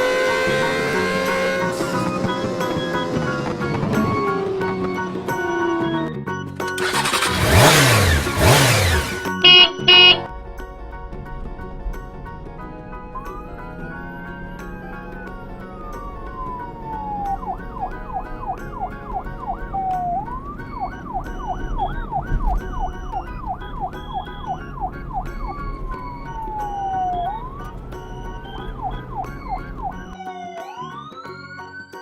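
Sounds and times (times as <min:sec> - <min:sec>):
background music with a steady beat: 0:00.0 - 0:06.6, 0:08.3 - 0:32.0
police siren wailing and yelping: 0:00.0 - 0:10.3, 0:12.6 - 0:32.0.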